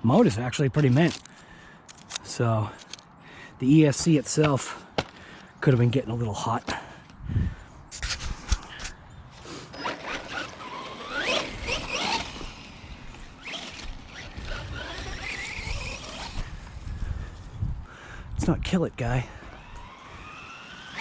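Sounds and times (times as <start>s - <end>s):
rough wheel and chassis noise: 7.9s - 17.5s, 19.2s - 21.0s
electric toy car motor whining: 9.4s - 17.0s, 19.4s - 21.0s.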